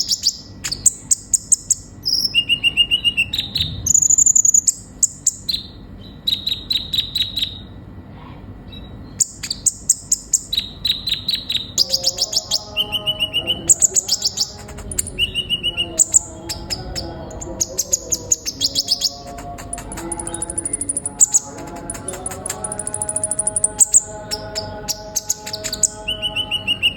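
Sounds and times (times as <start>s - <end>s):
sunbird chirping: 0.0s - 7.7s.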